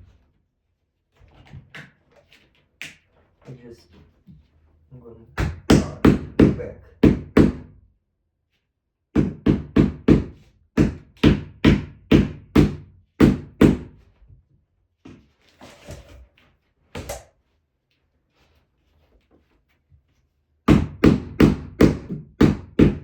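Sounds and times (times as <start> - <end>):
plastic hammer knocking on floor strip: 9.2 - 14.0, 20.7 - 23.0.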